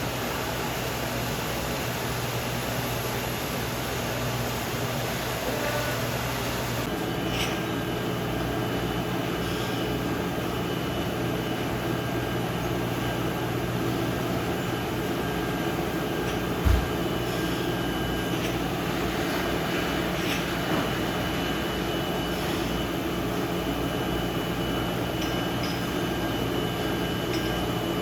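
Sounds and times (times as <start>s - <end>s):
machinery low hum: 0.0s - 28.0s.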